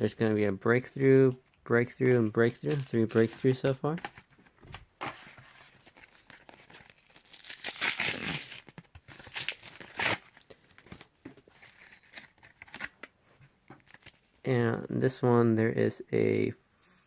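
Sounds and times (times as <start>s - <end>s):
foil wrapper crinkling and tearing: 6.0s - 10.5s.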